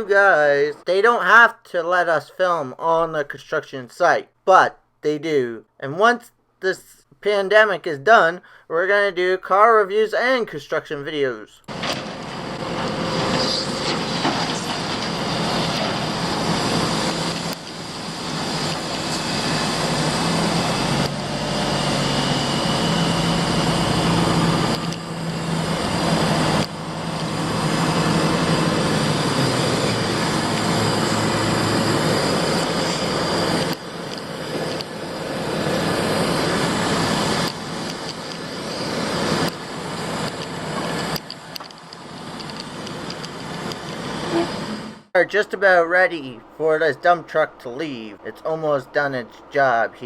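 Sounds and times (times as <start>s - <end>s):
heavy machinery engines running: 11.7s - 45.1s.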